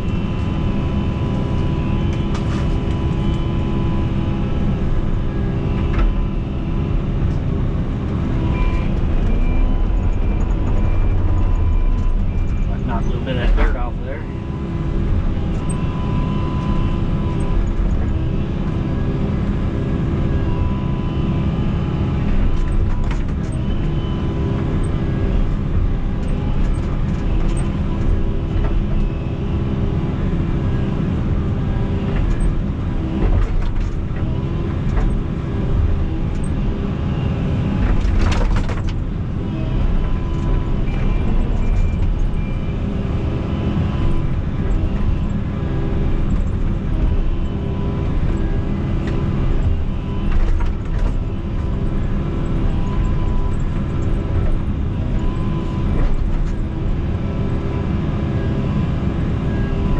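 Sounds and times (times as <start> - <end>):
excavator diesel engine running: 0.0 - 59.9.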